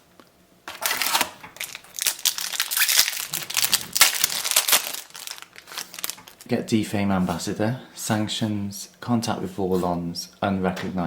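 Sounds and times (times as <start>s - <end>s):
wrapper tearing and crumpling: 0.7s - 6.5s.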